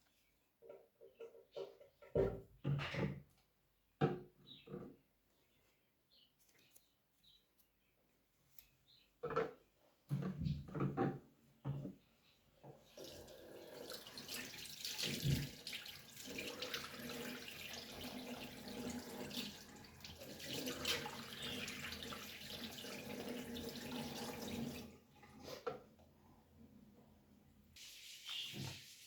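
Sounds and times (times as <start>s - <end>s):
tap water running into sink: 12.8s - 25.0s.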